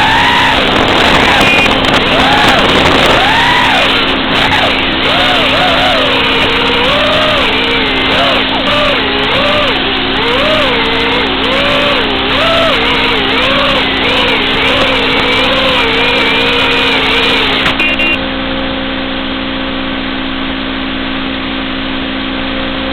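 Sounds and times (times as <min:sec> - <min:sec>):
quadcopter motors whining: 0:00.0 - 0:18.2
high double beep: 0:01.4 - 0:01.8, 0:17.7 - 0:18.2.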